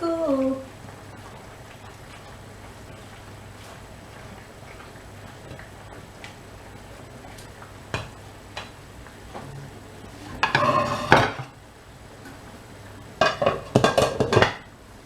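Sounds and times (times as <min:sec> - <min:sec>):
metal cookware clattering: 0:10.3 - 0:11.6, 0:13.2 - 0:14.7.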